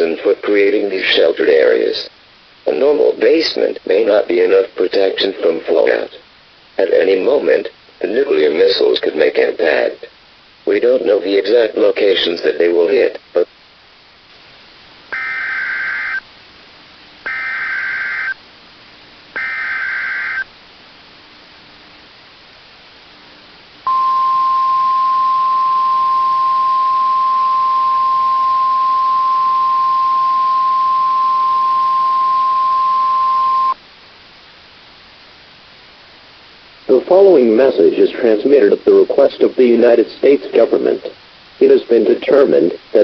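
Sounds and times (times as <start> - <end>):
warbling data tones: 15.1 - 16.2, 17.3 - 18.4, 19.4 - 20.5, 23.9 - 33.8
steady attention tone: 15.1 - 16.3, 17.2 - 18.4, 19.3 - 20.5, 23.8 - 33.8.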